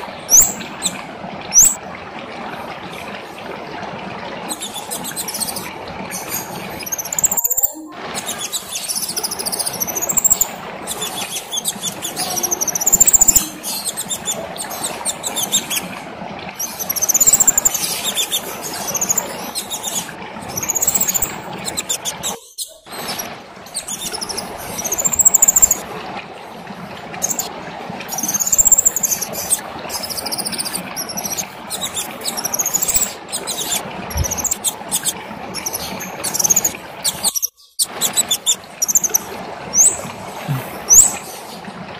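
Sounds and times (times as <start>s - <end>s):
bird singing: 0.3s - 1.8s, 6.8s - 10.5s, 11.5s - 14.4s, 16.7s - 18.2s, 20.6s - 21.8s, 22.4s - 25.8s, 28.2s - 34.6s.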